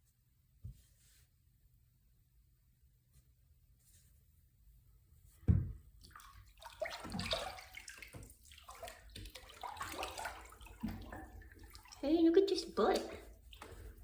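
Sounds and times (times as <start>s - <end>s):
dull thump: 5.4s - 5.9s
water sloshing in a bathtub: 5.5s - 14.0s.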